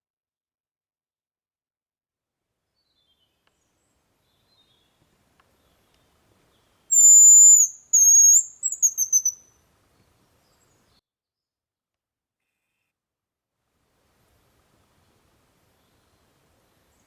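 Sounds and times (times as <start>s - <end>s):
grouse whistled song: 6.9s - 9.6s.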